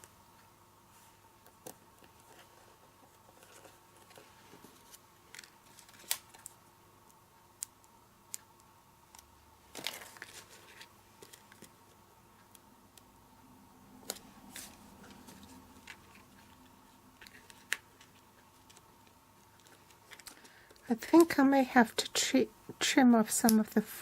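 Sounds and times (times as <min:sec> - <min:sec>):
paper rustling: 0:02.0 - 0:06.5, 0:09.7 - 0:11.7.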